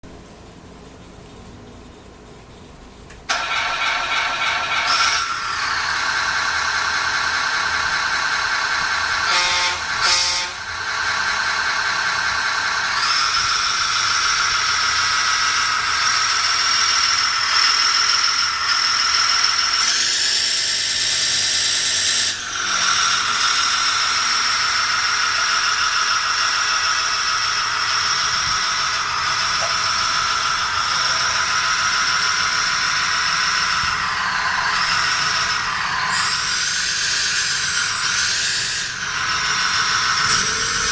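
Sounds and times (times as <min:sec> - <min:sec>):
simulated engine drone from speaker: 0:28.4 - 0:33.0, 0:39.1 - 0:40.9.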